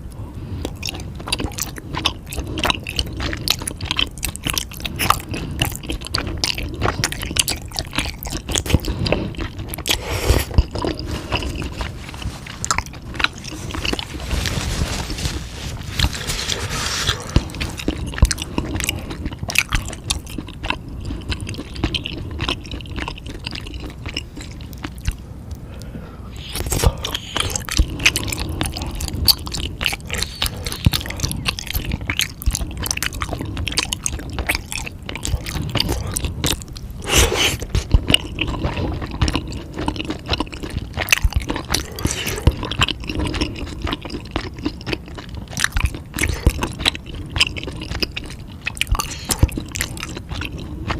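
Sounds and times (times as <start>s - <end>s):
steady low rumble: 0.0s - 44.3s
person chewing food: 0.0s - 50.9s
crackly crunches: 0.1s - 50.9s.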